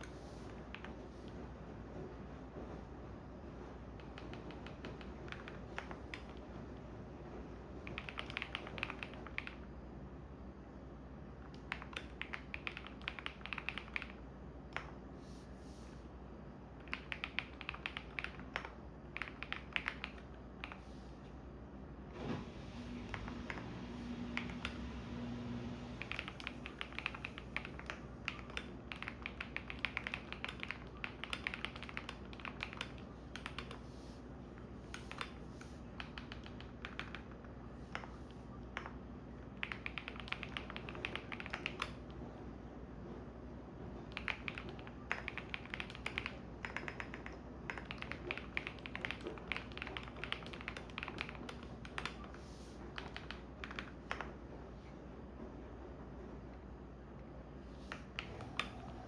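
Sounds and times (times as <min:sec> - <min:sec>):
washing machine humming: 0:00.0 - 0:59.0
typing on computer keyboard: 0:00.6 - 0:01.0, 0:03.9 - 0:06.4, 0:07.8 - 0:09.7, 0:11.4 - 0:15.0, 0:16.8 - 0:20.8, 0:24.3 - 0:24.9, 0:25.9 - 0:33.8, 0:34.8 - 0:42.2, 0:44.0 - 0:54.4, 0:57.8 - 0:59.0.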